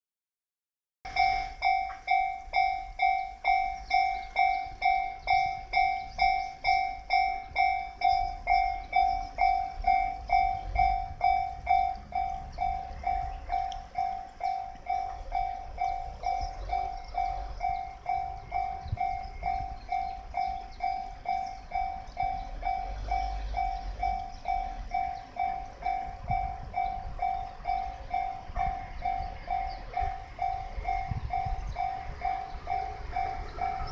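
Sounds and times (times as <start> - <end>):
level crossing alarm ringing: 1.1 - 33.9
low rumble: 7.1 - 33.9.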